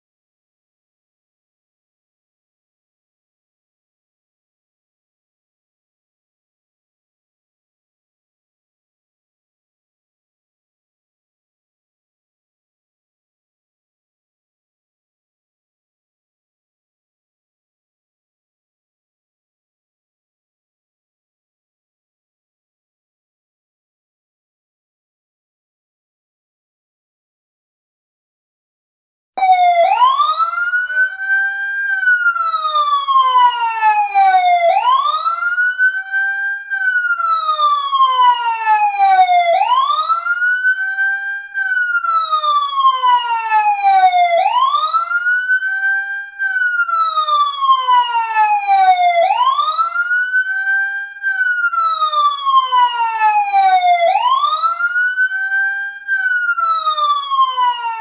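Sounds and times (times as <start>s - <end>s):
wailing fire truck siren: 29.4s - 58.0s.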